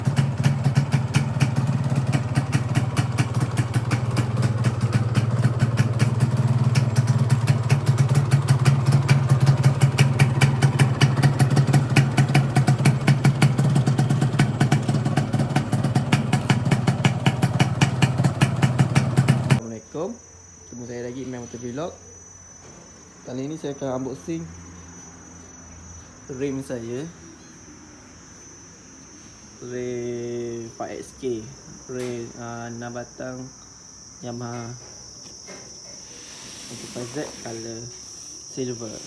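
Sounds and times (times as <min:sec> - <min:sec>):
motorcycle engine idling: 0:00.0 - 0:19.6.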